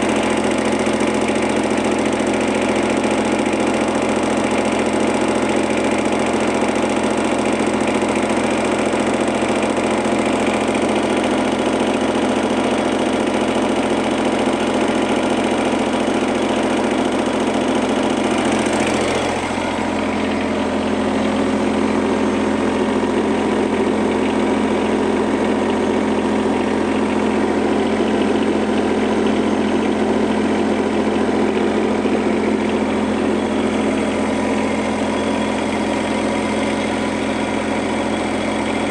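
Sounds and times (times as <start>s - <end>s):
excavator engine idling: 0.0s - 38.9s.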